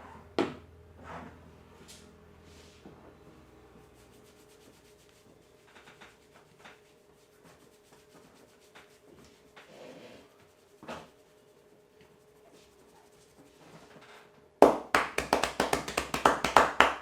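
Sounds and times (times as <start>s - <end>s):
hands rubbing hair and scalp: 14.6s - 17.0s.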